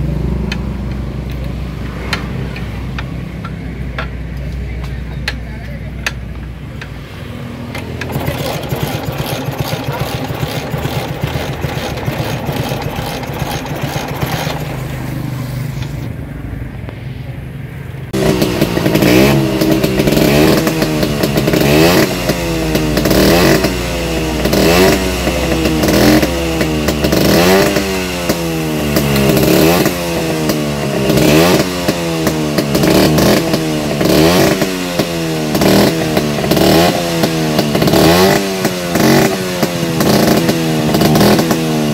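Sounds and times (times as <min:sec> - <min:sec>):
scooter engine revving: 0:06.9 - 0:16.2, 0:18.1 - 0:41.9.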